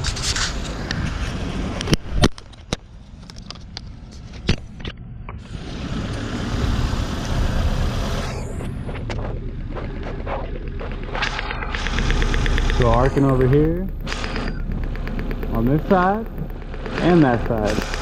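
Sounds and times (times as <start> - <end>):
misfiring car engine running: 5.6 - 18.0
sharp clicks: 10.8 - 18.0.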